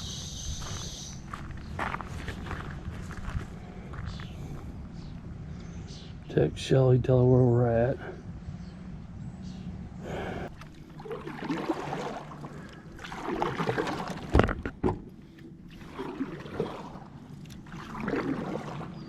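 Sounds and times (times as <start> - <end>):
steady low hum: 0.0 - 19.0
water sloshing against kayak hull: 10.2 - 19.0
sharp knocks on hull: 13.5 - 15.1.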